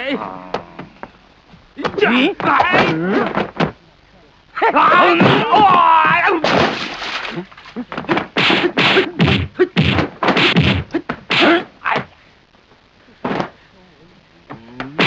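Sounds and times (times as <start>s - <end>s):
shouted battle cry: 4.6s - 6.4s
punch and kick hits and swishes: 8.1s - 11.6s.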